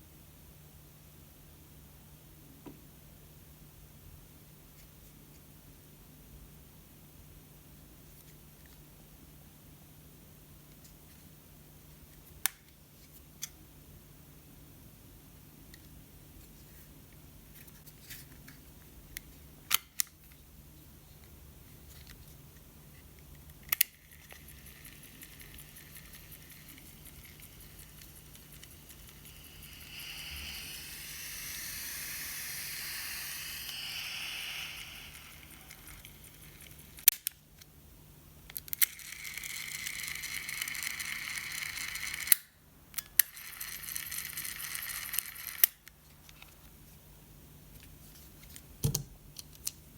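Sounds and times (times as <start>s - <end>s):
tape mechanism whirring: 24.2s - 37.2s.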